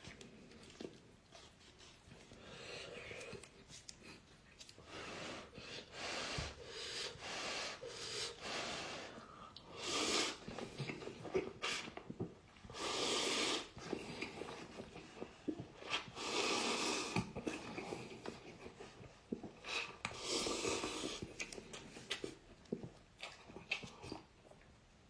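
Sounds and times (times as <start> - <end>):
chewing: 0.0 - 4.9, 10.4 - 12.8, 13.8 - 16.2, 16.9 - 24.7
person slurping noodles: 7.0 - 12.0, 12.7 - 18.8, 19.4 - 22.4.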